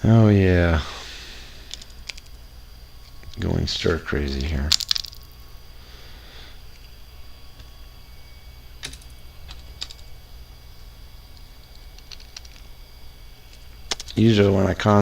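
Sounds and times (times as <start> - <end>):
low steady hum: 0.0 - 15.0
plastic pieces clicking together: 4.4 - 5.2, 12.0 - 12.7, 13.5 - 14.2.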